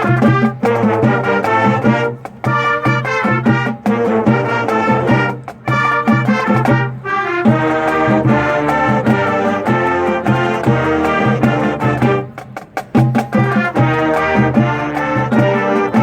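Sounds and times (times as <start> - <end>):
concert band playing brass piece: 0.0 - 16.0
sharp percussion hits: 0.0 - 16.0.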